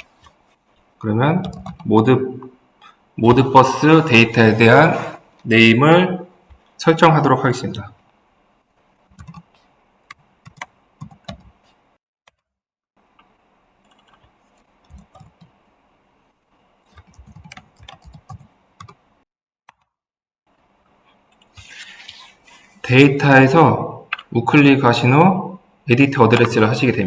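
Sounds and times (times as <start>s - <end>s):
keyboard typing: 1.4s - 1.9s, 9.1s - 11.6s, 13.2s - 15.6s, 16.9s - 19.0s, 19.7s - 20.0s.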